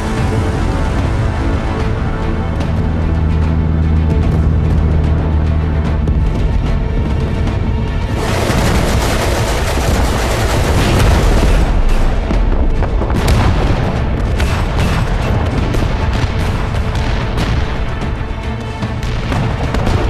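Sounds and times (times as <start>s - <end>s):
dramatic orchestral score: 0.0s - 20.0s
gunfire crackle: 8.2s - 12.5s
heavy explosion booms: 8.2s - 17.8s.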